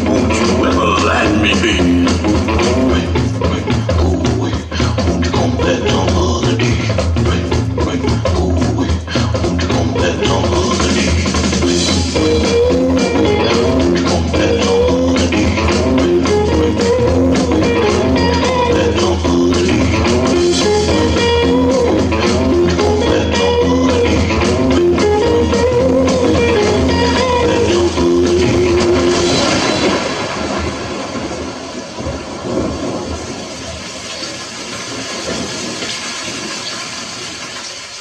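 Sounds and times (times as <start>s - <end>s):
rock band with guitar and drums: 0.0s - 31.5s
steady rushing noise: 0.0s - 38.0s.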